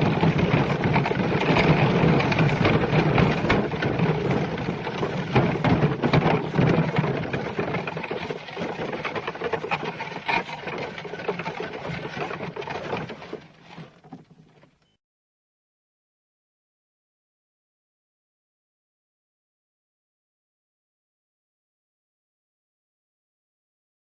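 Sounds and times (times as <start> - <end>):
cart wheels rattling: 0.0 - 14.9
horse hooves clopping: 0.0 - 14.9.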